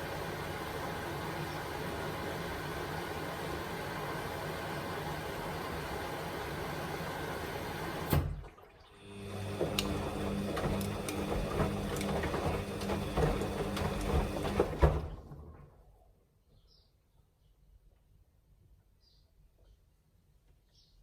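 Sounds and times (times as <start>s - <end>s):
washing machine rushing noise: 0.0s - 15.9s
drum motor humming: 9.2s - 15.2s.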